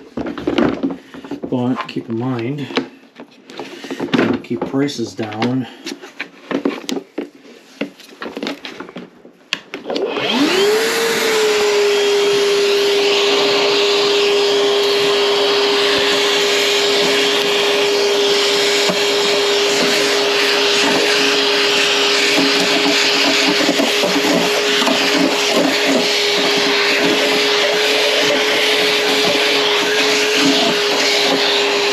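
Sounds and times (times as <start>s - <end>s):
vacuum cleaner running: 9.8s - 31.9s.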